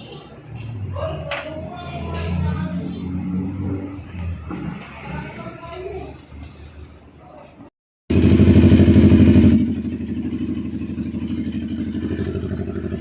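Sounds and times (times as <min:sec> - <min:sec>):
motorcycle engine running: 0:08.1 - 0:13.0.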